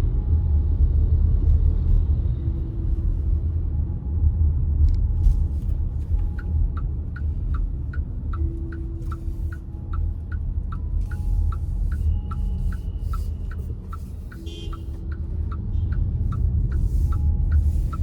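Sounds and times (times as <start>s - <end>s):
car road and engine rumble: 0.0s - 18.0s
turn signal ticking: 4.8s - 18.0s.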